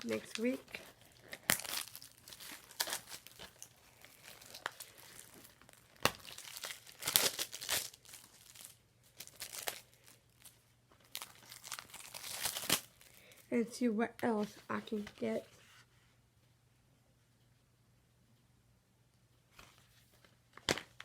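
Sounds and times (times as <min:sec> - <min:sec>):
plastic wrap tearing and crinkling: 0:00.0 - 0:13.4.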